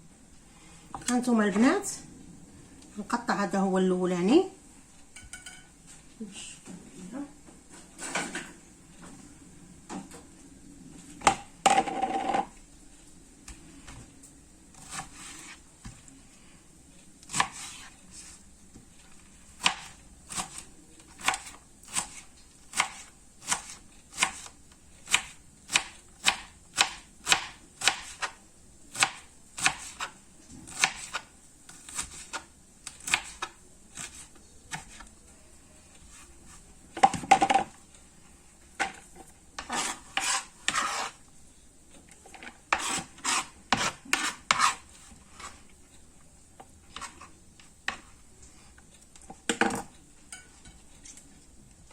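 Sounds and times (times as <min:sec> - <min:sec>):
kitchenware clatter: 0:05.2 - 0:05.8
knife chopping vegetables on plate: 0:19.6 - 0:28.4, 0:29.0 - 0:35.0, 0:42.7 - 0:44.8.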